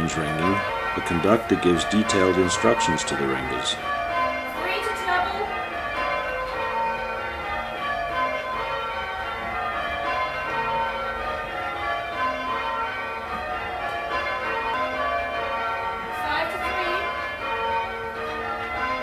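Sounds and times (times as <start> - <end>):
church bells change ringing: 0.0 - 19.0.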